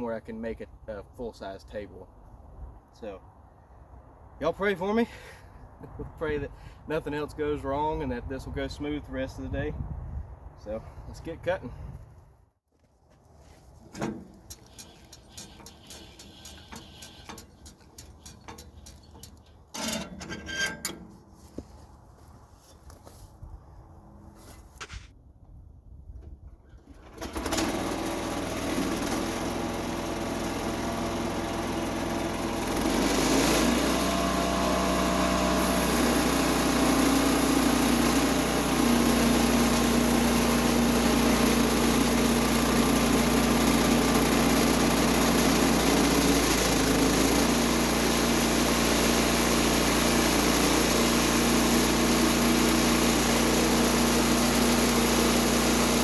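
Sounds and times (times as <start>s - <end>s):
sawmill gas engine revving: 27.1s - 56.0s.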